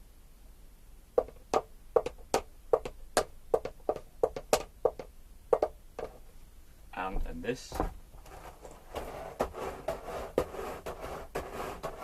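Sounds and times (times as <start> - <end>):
sharp knocks: 1.2 - 6.2.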